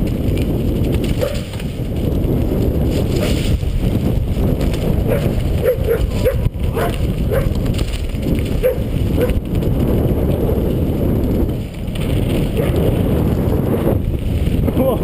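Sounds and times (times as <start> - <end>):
riding noise: 0.0 - 15.0
wind rushing on microphone: 0.0 - 15.0
dog barking and yipping: 5.1 - 7.5, 8.6 - 9.4.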